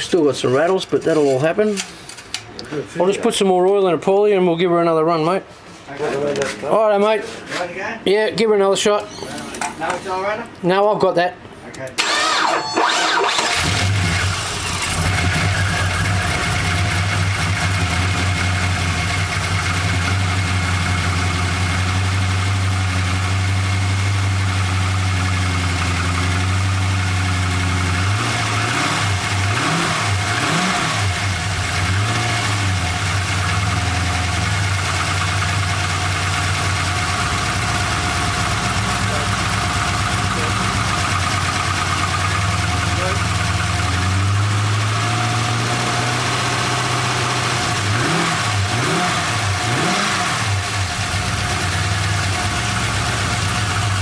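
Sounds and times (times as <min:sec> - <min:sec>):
car engine idling: 0:12.0 - 0:54.0.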